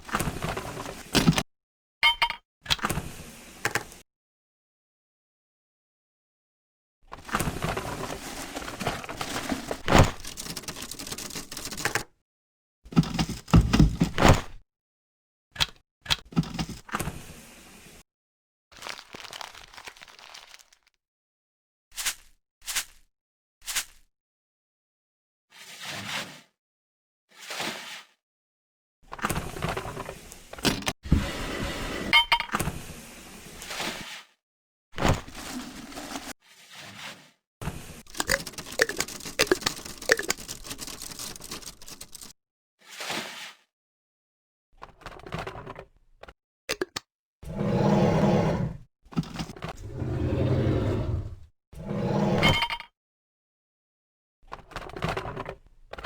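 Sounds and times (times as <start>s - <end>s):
plastic parts cracking and rattling: 8.5s - 12.1s, 38.1s - 42.3s.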